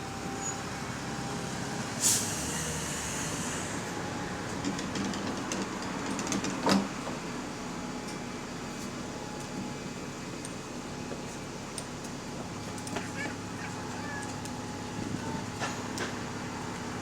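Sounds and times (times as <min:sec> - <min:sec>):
bus engine running: 0:00.0 - 0:17.0.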